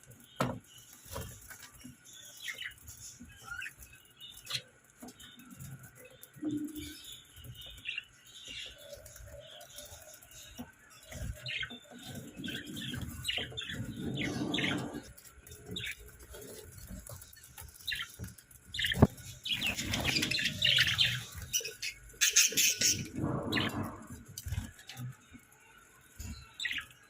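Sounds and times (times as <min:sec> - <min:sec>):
budgerigars chirping: 0:18.8 - 0:23.9.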